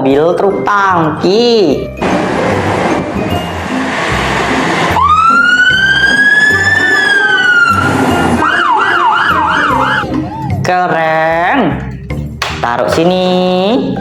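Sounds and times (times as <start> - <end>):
siren wailing and yelping: 4.9 - 10.7.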